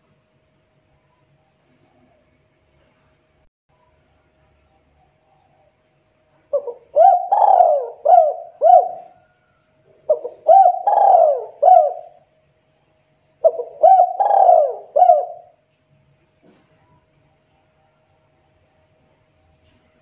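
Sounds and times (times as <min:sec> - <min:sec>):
dove cooing: 0:06.4 - 0:12.3, 0:13.4 - 0:15.5.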